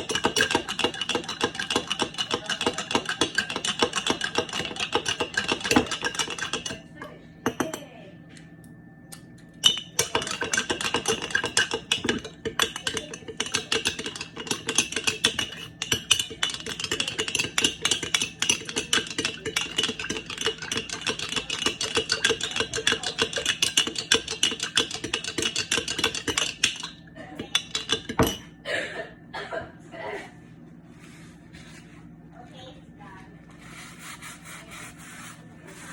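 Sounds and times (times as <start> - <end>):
utensil clinking against a dish: 0.0 - 8.0, 9.6 - 28.6.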